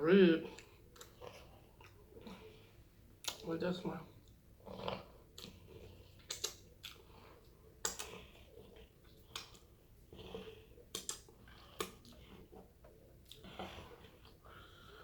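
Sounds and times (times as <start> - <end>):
chewing: 0.4 - 3.5, 4.1 - 15.0
mouth clicks and smacks: 0.6 - 2.0, 3.2 - 3.5, 5.3 - 7.2, 7.8 - 12.2.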